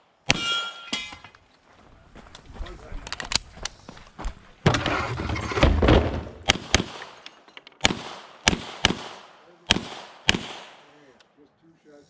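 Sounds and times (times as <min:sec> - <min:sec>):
pistol shots with echo: 0:00.3 - 0:00.8, 0:06.4 - 0:07.2, 0:07.8 - 0:10.9.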